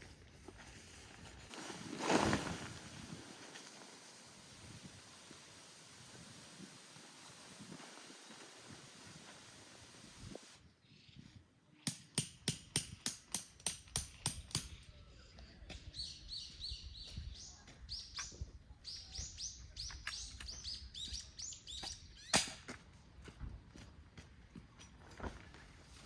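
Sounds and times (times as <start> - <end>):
small bird chirping: 14.5 - 22.4.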